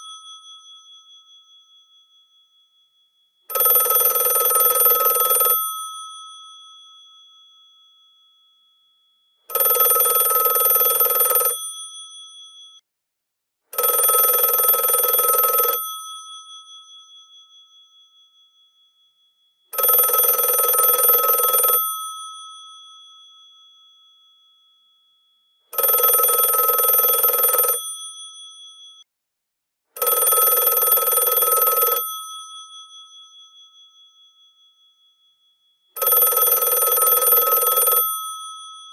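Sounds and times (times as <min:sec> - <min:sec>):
telephone bells ringing: 0:03.5 - 0:05.7, 0:09.5 - 0:11.6, 0:13.8 - 0:15.8, 0:19.8 - 0:21.9, 0:25.8 - 0:27.8, 0:30.0 - 0:32.1, 0:36.0 - 0:38.5.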